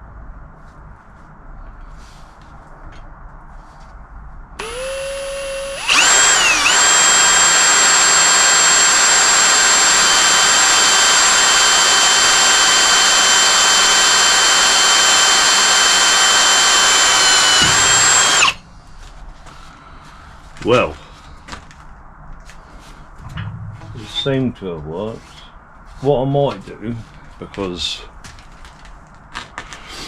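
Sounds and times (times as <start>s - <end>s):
electric drill whining: 4.6s - 18.6s.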